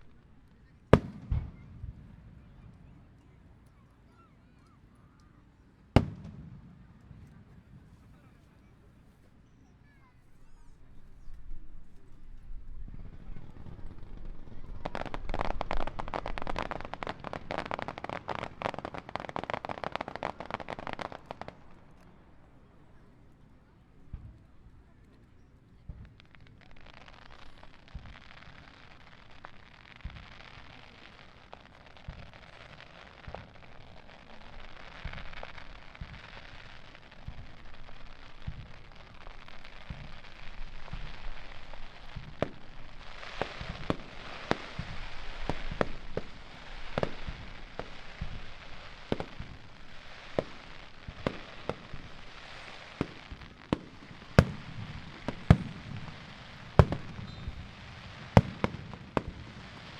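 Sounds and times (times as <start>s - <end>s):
fireworks bursting: 0.0s - 59.9s
fireworks hissing: 26.6s - 59.9s.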